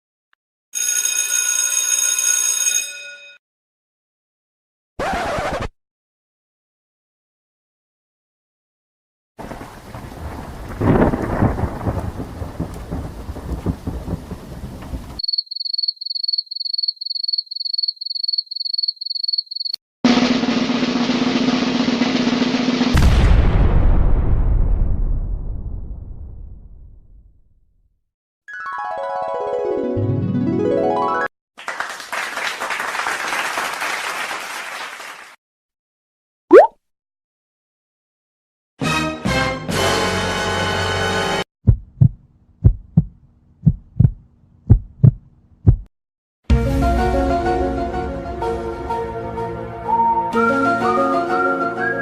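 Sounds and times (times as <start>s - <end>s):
rain: 9.4s - 15.2s
thunder rumble: 9.4s - 15.2s, 23.0s - 27.2s
snare drum roll: 20.1s - 23.0s
crowd clapping: 31.6s - 35.4s.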